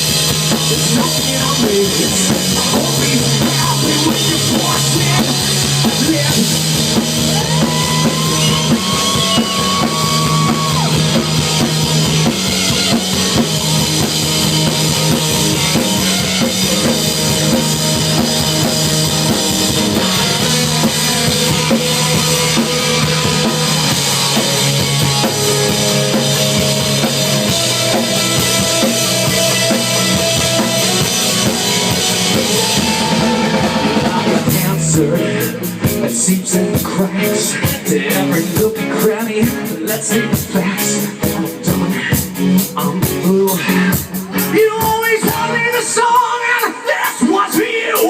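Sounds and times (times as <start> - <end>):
drum kit: 0.0 - 48.0
live rock band playing: 0.0 - 48.0.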